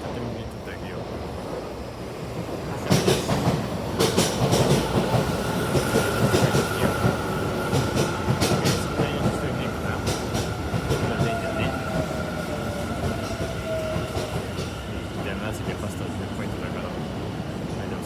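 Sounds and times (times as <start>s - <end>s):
train wheels clattering over rail joints: 2.9s - 11.4s.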